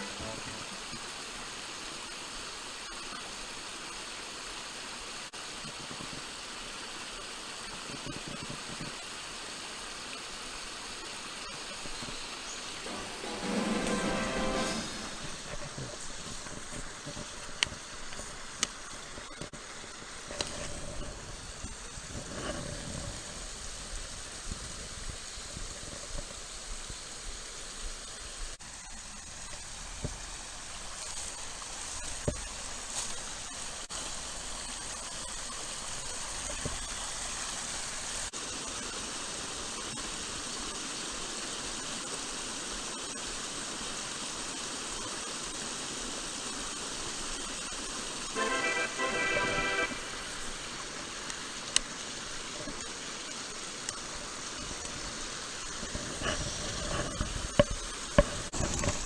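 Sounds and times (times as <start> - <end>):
mountain stream rushing: 0.0 - 21.4, 35.8 - 59.0.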